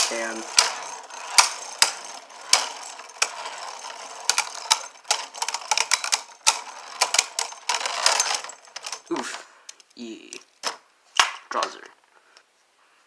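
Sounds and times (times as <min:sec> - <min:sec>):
spinning tops clacking together: 0:00.0 - 0:09.1
spinning tops scraping hiss: 0:00.0 - 0:09.4.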